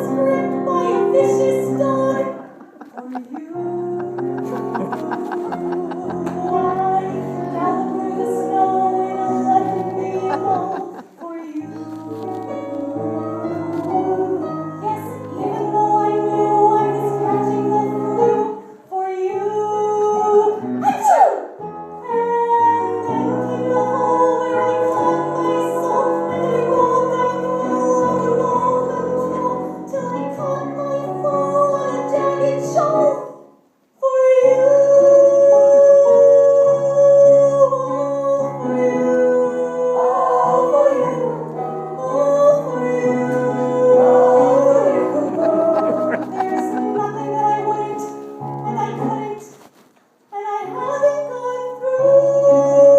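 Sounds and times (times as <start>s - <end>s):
instrumental accompaniment: 0.0s - 18.4s, 41.2s - 49.3s
woman singing: 0.0s - 20.8s, 22.0s - 33.4s, 34.0s - 49.6s, 50.3s - 52.9s.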